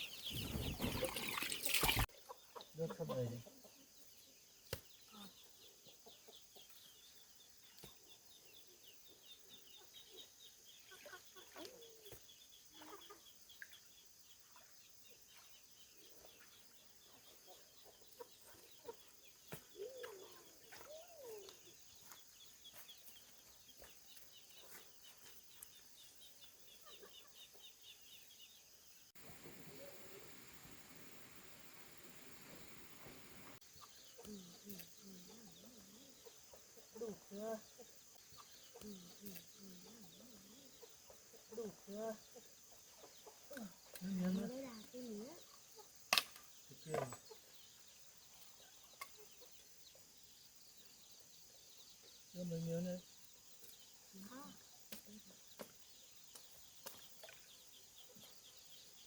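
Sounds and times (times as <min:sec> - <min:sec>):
chicks peeping: 0:00.0 - 0:01.3
hens clucking: 0:00.2 - 0:03.8.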